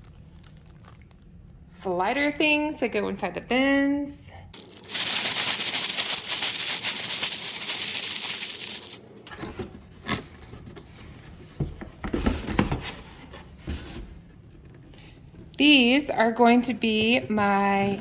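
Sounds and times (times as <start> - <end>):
packaging being torn open: 4.6 - 9.1.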